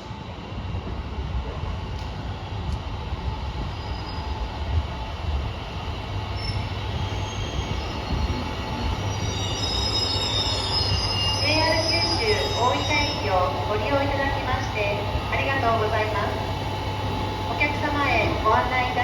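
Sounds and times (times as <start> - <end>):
diesel railcar rumbling: 0.0 - 19.0
high squeal of wheels: 9.0 - 13.1.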